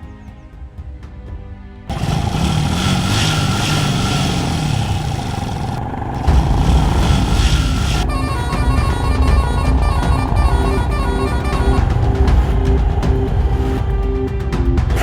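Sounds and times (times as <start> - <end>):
motorcycle engines revving: 1.9 - 8.1
heavy bass: 1.9 - 14.1
dramatic background music: 5.8 - 15.0.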